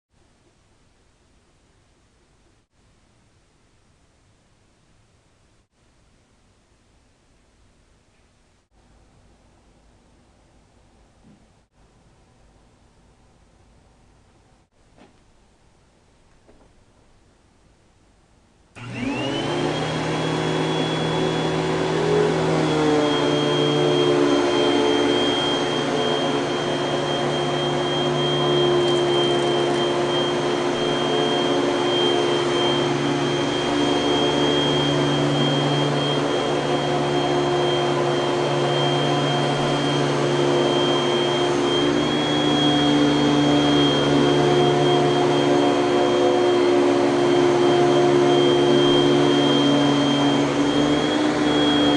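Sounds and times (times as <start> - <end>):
vacuum cleaner motor whining: 18.8 - 51.9.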